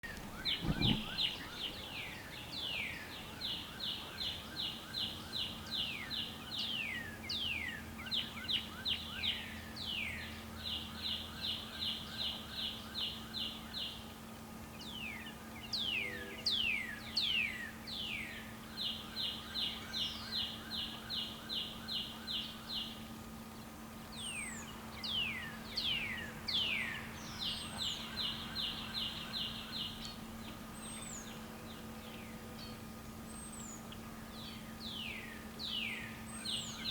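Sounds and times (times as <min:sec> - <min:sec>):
steady low hum: 0:00.0 - 0:04.8, 0:17.8 - 0:36.9
songbird trilling: 0:00.0 - 0:06.0.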